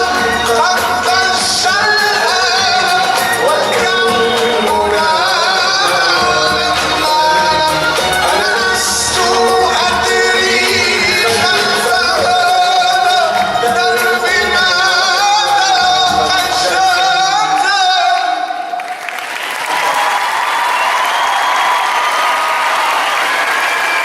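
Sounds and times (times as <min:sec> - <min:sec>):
instrumental backing: 0:00.0 - 0:17.8
person singing ornamented melody: 0:00.0 - 0:18.5
audience applauding: 0:00.0 - 0:24.0.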